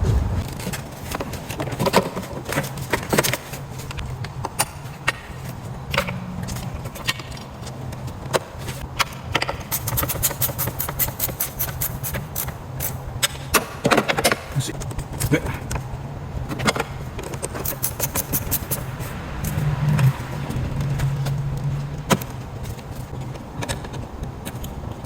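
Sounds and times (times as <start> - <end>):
steady low hum: 0.0 - 0.6, 15.8 - 23.5.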